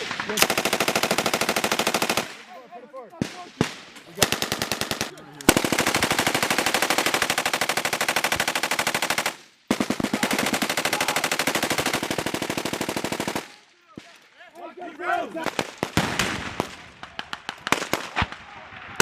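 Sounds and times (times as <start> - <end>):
machine gun bursts: 4.2 - 13.5.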